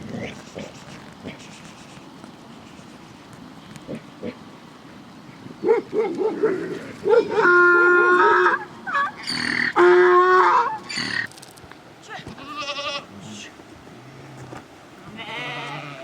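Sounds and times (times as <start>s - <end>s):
animal calls: 5.6s - 11.3s.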